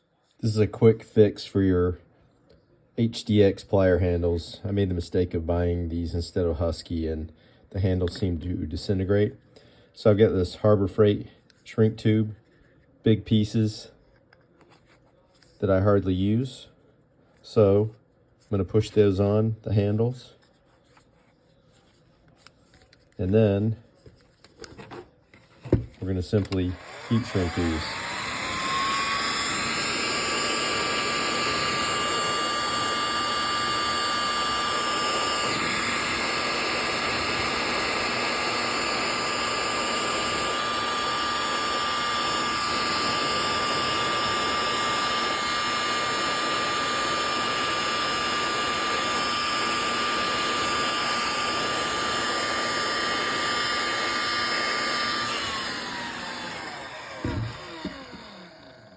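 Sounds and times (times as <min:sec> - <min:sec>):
heat gun fan whine: 0:21.8 - 0:58.9.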